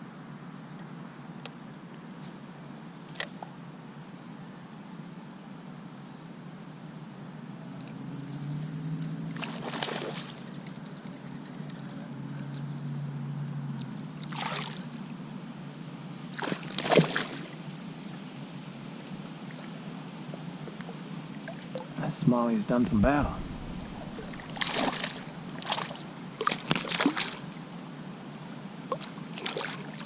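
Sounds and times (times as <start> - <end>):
steady low hum: 17.5 - 26.6
water splashing against kayak: 23.0 - 27.5.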